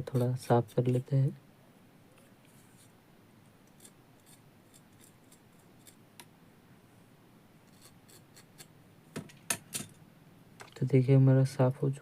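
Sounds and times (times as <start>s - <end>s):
small tool scraping wire: 2.4s - 3.0s, 3.6s - 6.0s, 7.6s - 8.7s.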